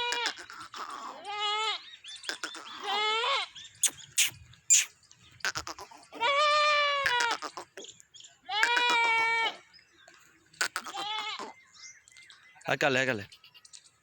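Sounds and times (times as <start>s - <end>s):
goat bleating: 0.0s - 1.8s, 2.4s - 4.9s, 5.5s - 7.7s, 8.5s - 9.6s, 10.6s - 11.6s.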